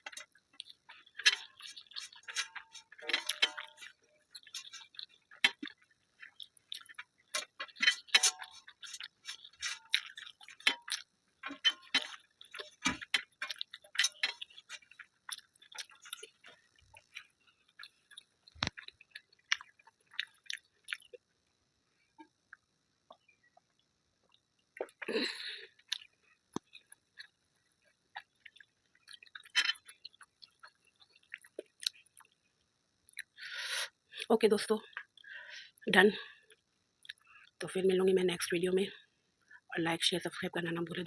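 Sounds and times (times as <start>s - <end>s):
person chewing: 0.0s - 21.2s, 22.5s - 32.4s, 37.0s - 37.5s.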